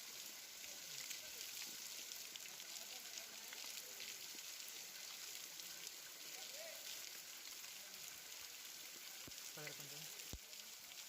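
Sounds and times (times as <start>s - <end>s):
waterfall spray hissing: 0.0s - 11.0s.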